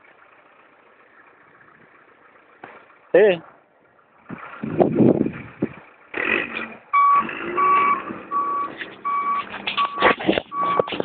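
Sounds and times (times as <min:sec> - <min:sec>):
vehicle engine running: 0:00.0 - 0:11.0
reversing alarm beeping: 0:06.9 - 0:11.0.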